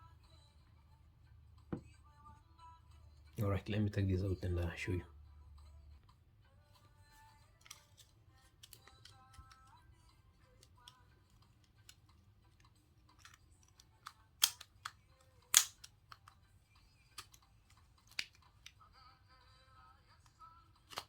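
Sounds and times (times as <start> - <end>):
small phone parts clicking: 7.5 - 9.8, 10.5 - 18.8.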